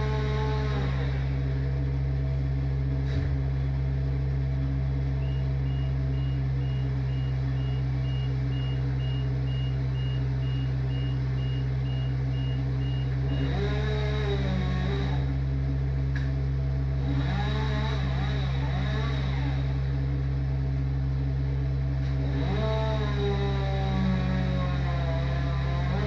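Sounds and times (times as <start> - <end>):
heavy vehicle engine running: 0.0 - 26.0
reversing alarm beeping: 5.2 - 13.6.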